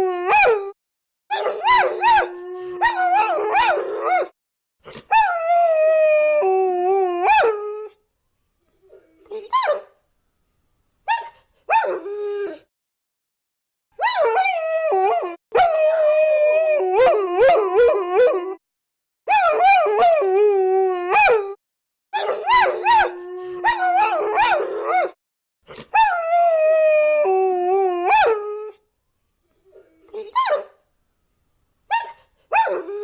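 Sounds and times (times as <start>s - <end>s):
dogs howling: 1.4s - 4.3s
dog yips: 9.3s - 9.9s, 30.1s - 30.7s, 31.9s - 32.9s.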